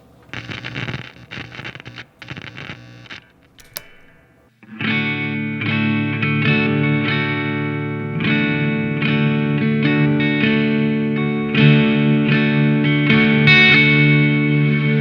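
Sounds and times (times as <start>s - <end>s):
distorted electric guitar: 0.3s - 4.4s.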